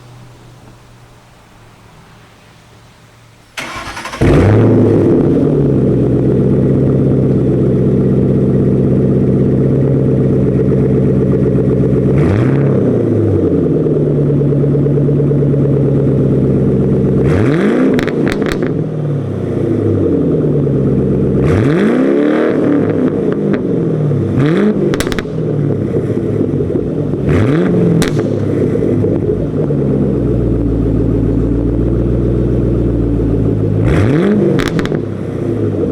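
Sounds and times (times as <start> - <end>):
car engine idling: 0.0 - 21.6, 22.7 - 35.9
car engine revving: 0.0 - 35.9
car engine starting: 0.0 - 35.9.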